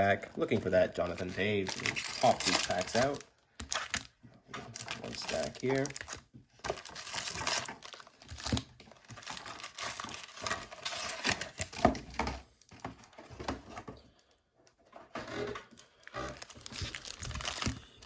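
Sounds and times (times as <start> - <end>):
card packs crinkling: 0.0 - 12.1, 15.8 - 18.0.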